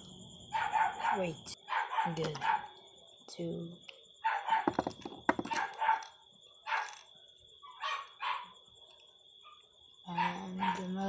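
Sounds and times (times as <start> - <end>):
dog barking: 0.5 - 2.8, 4.2 - 4.8, 5.5 - 7.0, 7.6 - 8.6, 9.4 - 10.9.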